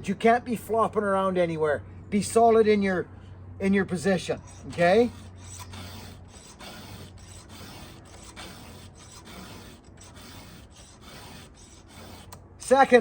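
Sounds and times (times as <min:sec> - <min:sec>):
file rasping on chainsaw chain: 0:04.4 - 0:12.4.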